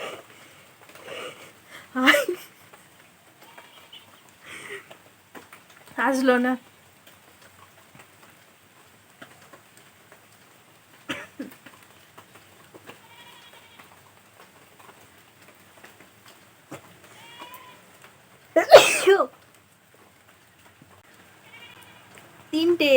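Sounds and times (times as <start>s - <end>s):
woman sneezing: 18.6s - 19.3s.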